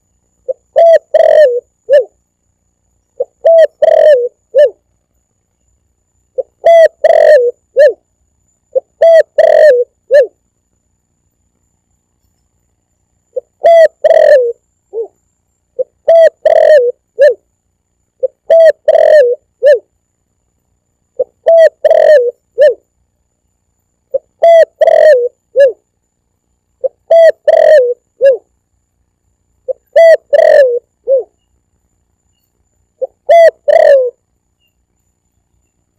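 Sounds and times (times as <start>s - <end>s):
dove cooing: 0.0s - 2.2s, 3.2s - 4.8s, 6.4s - 8.0s, 8.7s - 10.4s, 13.3s - 15.2s, 15.8s - 17.4s, 18.2s - 19.9s, 21.2s - 22.8s, 24.1s - 25.8s, 26.8s - 28.5s, 29.6s - 31.4s, 33.0s - 34.2s.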